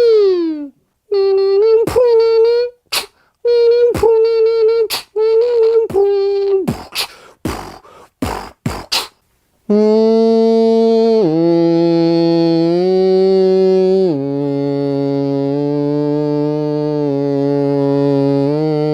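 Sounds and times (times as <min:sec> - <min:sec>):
man humming steady tones: 0:00.0 - 0:09.1, 0:09.7 - 0:18.9
buzzy held vocal tone: 0:00.0 - 0:18.9
mouth clicks: 0:01.9 - 0:09.2
short hissing bursts from mouth: 0:02.8 - 0:03.4, 0:04.9 - 0:05.2, 0:06.7 - 0:09.3.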